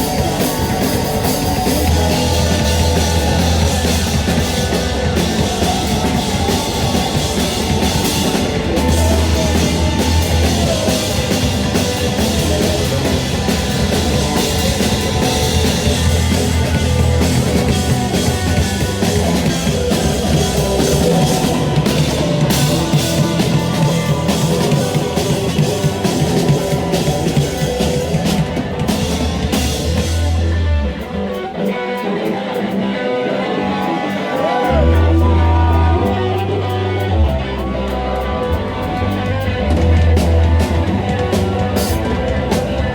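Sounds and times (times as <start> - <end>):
drum kit: 0.0 - 42.9
electric guitar: 0.0 - 42.9
rock band playing: 0.0 - 42.9.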